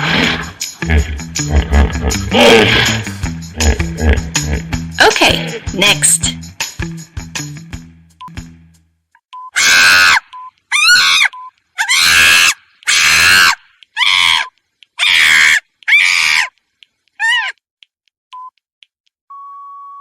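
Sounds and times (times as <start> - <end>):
monkey shrieking: 9.6 - 16.5, 17.2 - 17.6.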